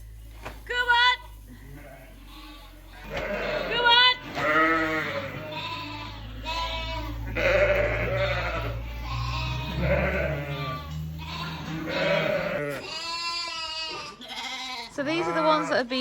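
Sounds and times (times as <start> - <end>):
low steady hum: 0.0 - 12.9
sheep and lambs bleating: 1.5 - 16.0.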